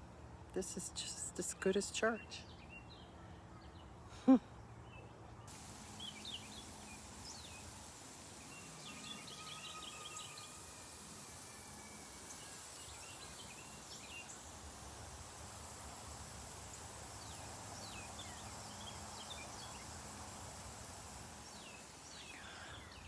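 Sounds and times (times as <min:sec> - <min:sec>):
faint outdoor hiss: 0:00.0 - 0:23.0
small birds chirping: 0:04.8 - 0:23.0.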